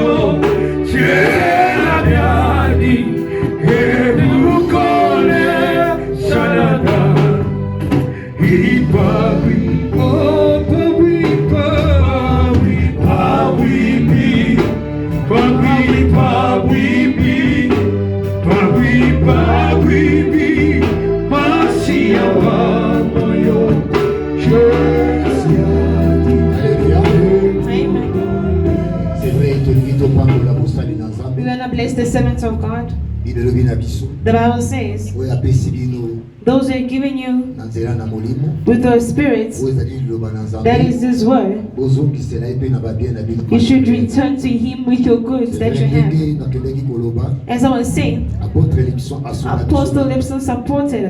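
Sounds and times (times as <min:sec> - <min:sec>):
gospel singing with percussion: 0:00.0 - 0:36.6.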